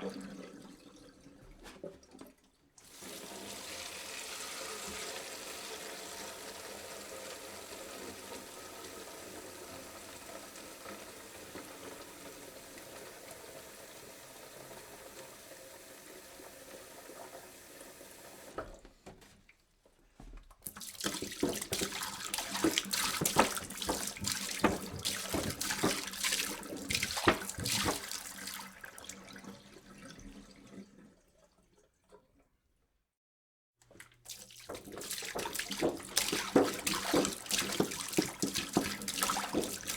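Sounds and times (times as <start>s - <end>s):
water pouring into a jug: 0.0s - 18.5s, 20.6s - 32.5s, 33.9s - 39.9s
splashing pour: 20.6s - 32.4s, 33.8s - 39.9s.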